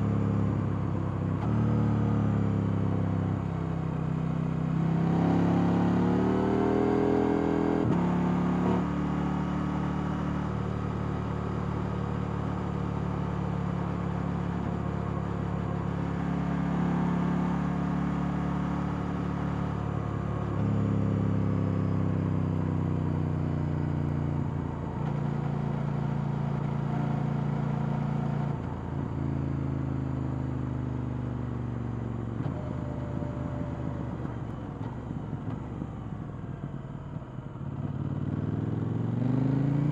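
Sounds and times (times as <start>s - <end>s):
motorcycle engine revving: 37.9s - 39.9s.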